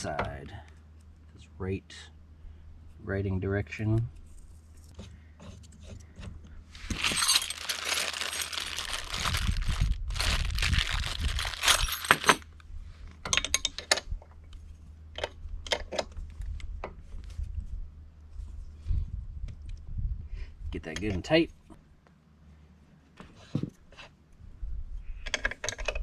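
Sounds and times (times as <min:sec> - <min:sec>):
metal tools clinking and rattling: 0:06.9 - 0:12.5.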